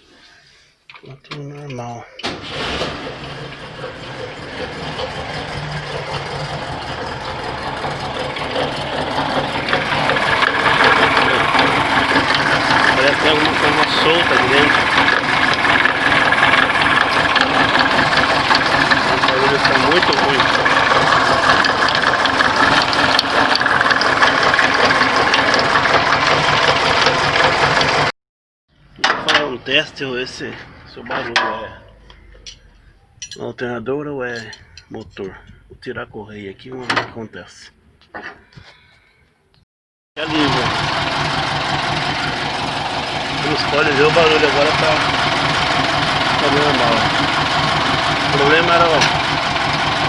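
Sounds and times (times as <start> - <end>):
engine running: 2.2 - 28.1, 40.2 - 50.0
rapid rattling tick: 4.0 - 28.1.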